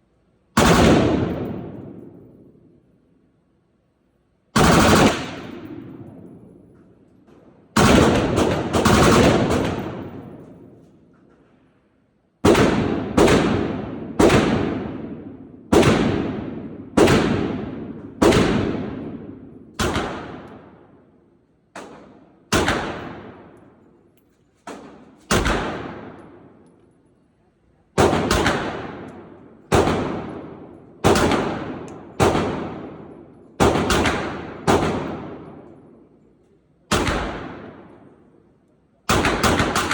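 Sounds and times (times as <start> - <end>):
gunshots with ringing echo: 0.6 - 2.7, 4.6 - 6.8, 7.7 - 10.9, 12.4 - 21.2, 21.8 - 23.8, 24.7 - 26.6, 28.0 - 36.2, 36.9 - 38.3, 39.1 - 39.9.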